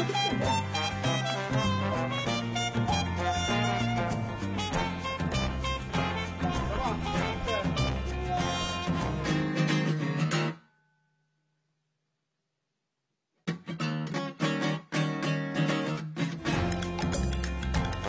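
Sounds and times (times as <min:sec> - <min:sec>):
background music: 0:00.0 - 0:10.2, 0:16.4 - 0:18.0
strummed guitar music: 0:00.0 - 0:10.6, 0:13.5 - 0:18.0.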